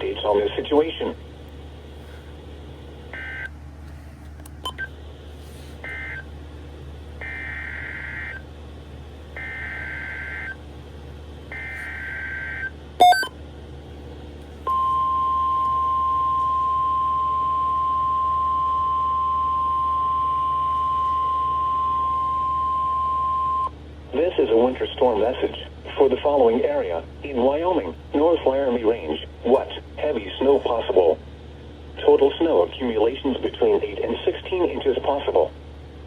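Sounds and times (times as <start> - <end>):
steady alert tone: 13.0 - 13.3.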